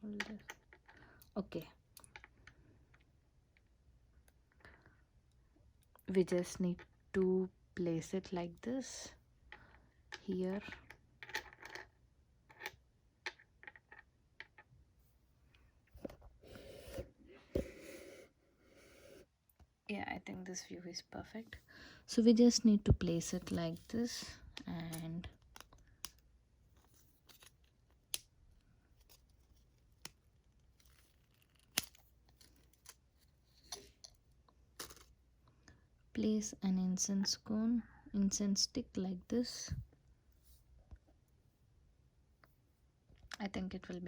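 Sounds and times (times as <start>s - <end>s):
small parts clicking and tapping: 0.1s - 6.0s, 9.5s - 14.7s, 23.0s - 35.2s.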